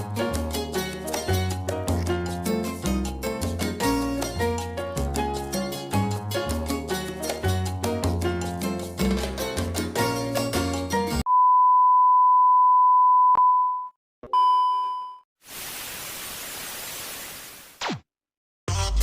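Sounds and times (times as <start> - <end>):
high beep: 11.3 - 15.2.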